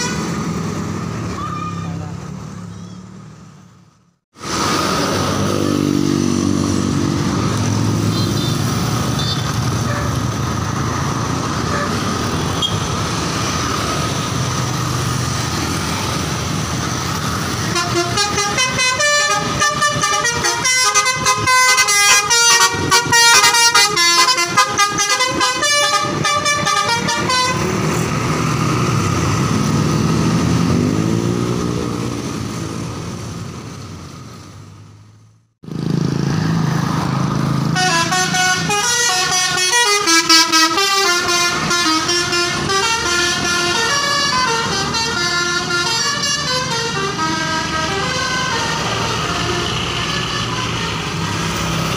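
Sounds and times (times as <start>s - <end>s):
bus horns playing tunes: 0.0s - 0.4s, 8.0s - 10.3s, 11.6s - 12.9s, 17.5s - 27.9s, 37.7s - 51.9s
bus engine noise: 0.0s - 51.9s.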